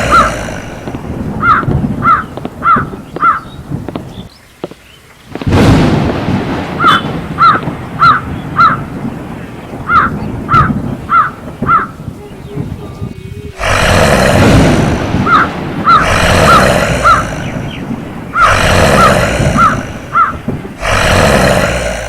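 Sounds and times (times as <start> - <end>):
crow cawing: 0.0 - 0.8, 1.4 - 3.6, 6.8 - 8.9, 9.9 - 12.0, 15.2 - 17.8, 18.4 - 20.4
harsh rushing noise: 0.0 - 4.0, 13.2 - 22.0.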